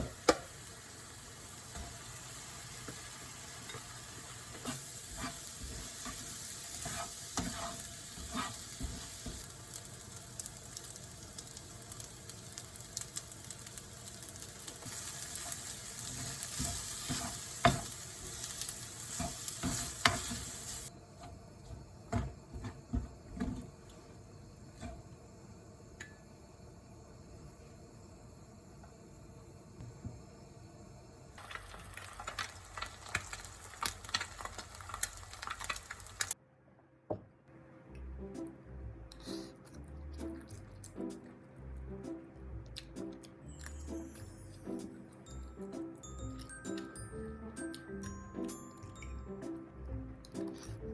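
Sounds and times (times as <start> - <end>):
food sizzling in a pan: 0.0 - 36.4
spatula scraping and knocking: 4.5 - 9.4, 16.1 - 17.9, 21.2 - 23.8.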